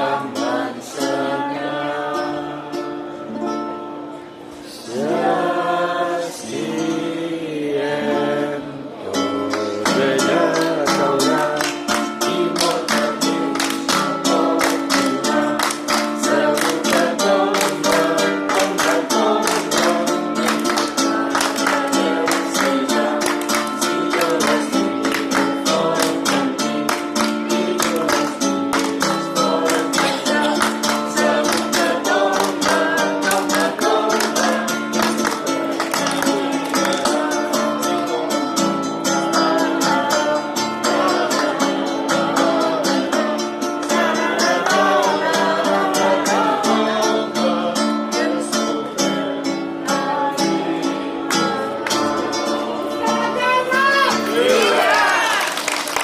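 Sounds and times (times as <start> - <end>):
acoustic guitars strumming: 0.0 - 56.0
person singing: 4.7 - 55.4.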